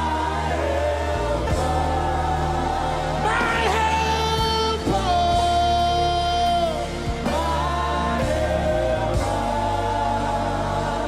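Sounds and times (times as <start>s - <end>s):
steady bass: 0.0s - 11.0s
sustained keyboard chords: 0.0s - 11.0s.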